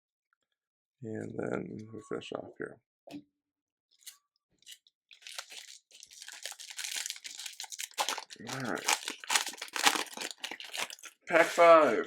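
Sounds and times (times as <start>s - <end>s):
plastic wrapper crinkling and tearing: 4.0s - 12.0s.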